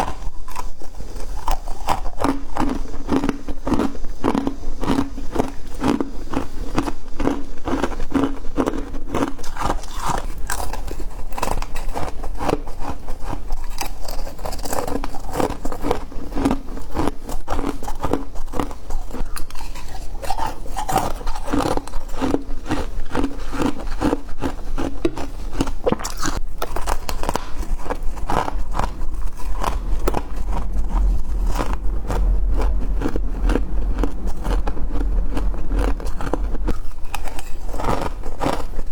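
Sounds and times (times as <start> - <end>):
frost being chewed: 0.0 - 38.9
low hum: 27.4 - 38.9.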